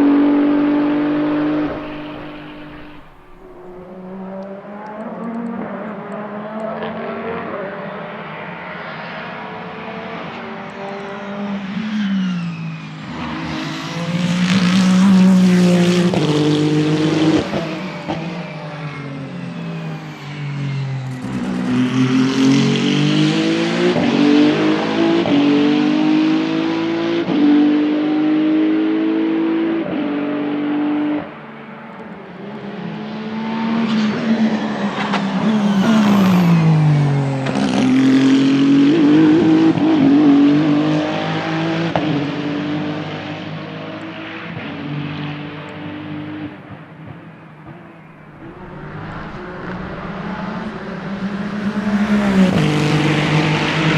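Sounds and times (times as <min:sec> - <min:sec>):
race car engine shifting gears: 0:00.0 - 0:07.5.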